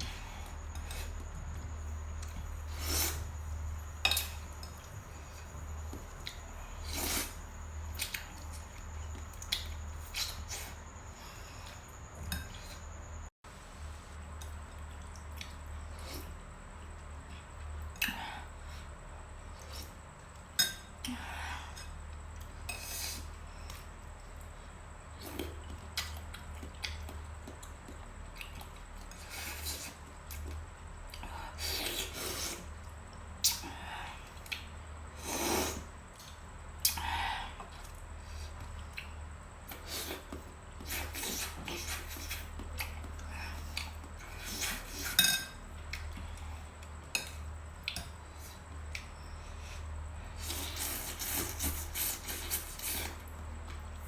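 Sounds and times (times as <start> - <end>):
mouth and chewing noises: 25.2 - 33.6, 37.7 - 45.2.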